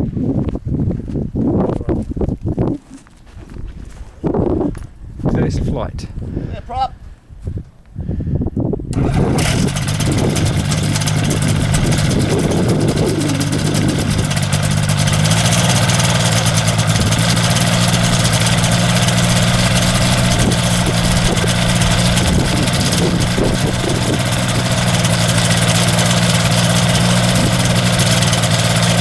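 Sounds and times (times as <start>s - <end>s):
engine starting and idling: 8.9s - 29.0s.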